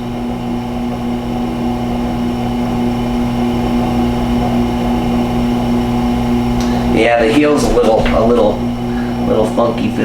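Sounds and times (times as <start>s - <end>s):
electric motor humming: 0.0s - 10.0s.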